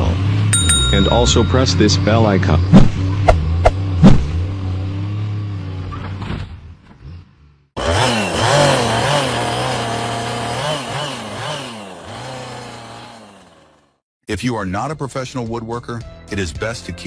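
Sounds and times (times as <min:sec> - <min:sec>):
chainsaw engine revving: 0:07.8 - 0:14.0.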